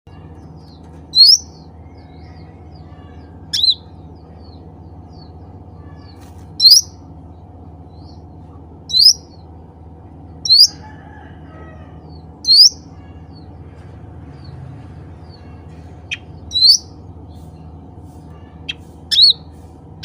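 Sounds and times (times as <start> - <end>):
steady low hum: 0.1 - 20.0
songbird calling: 0.6 - 7.0, 8.0 - 9.4, 10.4 - 10.8, 12.4 - 13.3, 15.4 - 19.7.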